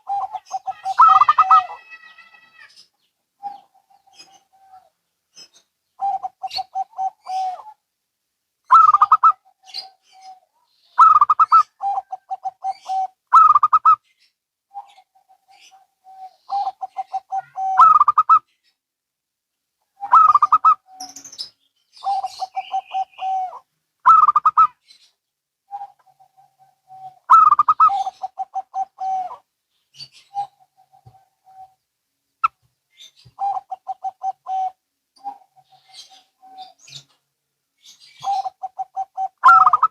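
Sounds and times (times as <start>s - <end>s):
doves cooing: 0.0s - 2.8s, 6.0s - 7.8s, 8.7s - 14.0s, 14.7s - 18.4s, 20.0s - 21.1s, 22.0s - 24.8s, 25.7s - 29.4s, 30.0s - 31.8s, 33.2s - 37.1s, 38.0s - 39.9s.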